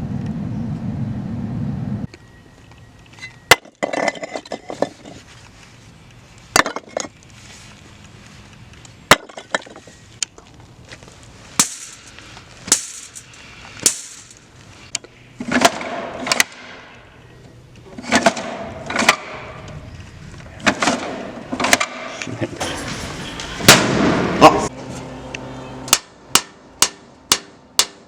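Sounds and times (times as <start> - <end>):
clattering impacts with rattling crash: 22.6 - 24.7.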